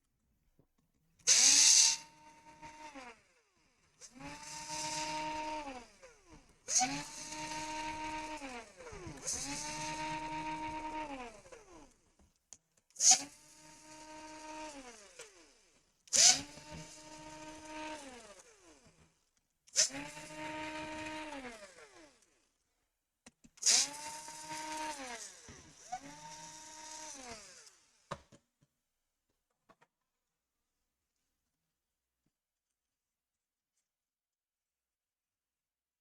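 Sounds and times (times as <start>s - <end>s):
electric screwdriver whining: 1.3s - 3.3s, 4.0s - 12.0s, 13.0s - 22.3s, 23.5s - 28.0s.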